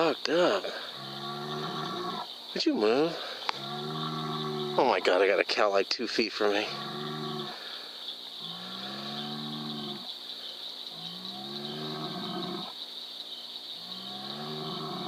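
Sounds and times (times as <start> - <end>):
steady high hiss: 0.0 - 15.0
cow mooing: 1.0 - 2.2, 3.6 - 4.8, 6.6 - 7.5, 8.5 - 10.0, 11.0 - 12.7, 13.9 - 15.0.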